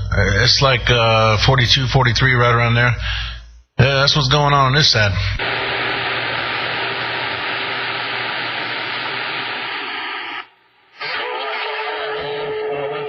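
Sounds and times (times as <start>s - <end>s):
radio static hiss: 5.4s - 13.0s
faint voice over radio: 11.0s - 13.0s.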